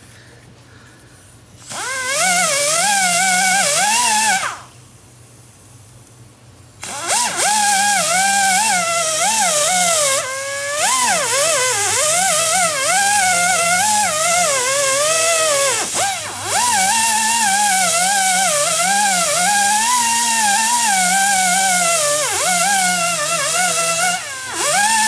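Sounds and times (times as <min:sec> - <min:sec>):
power tool motor whining: 0:01.6 - 0:04.7, 0:06.8 - 0:25.0.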